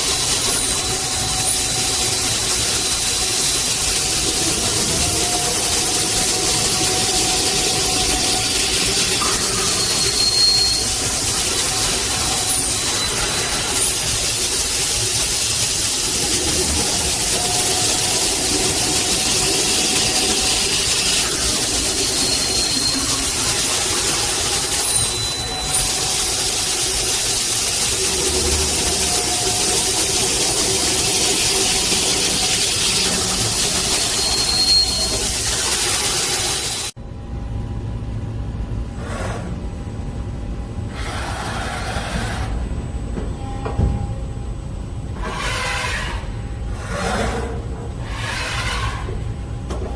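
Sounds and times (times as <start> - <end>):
faint squealing tones: 0.0 - 36.9
drilling machine hissing: 0.0 - 37.0.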